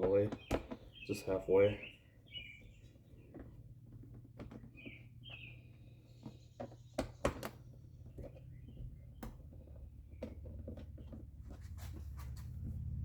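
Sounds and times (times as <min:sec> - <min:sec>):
low hum: 0:11.2 - 0:13.0.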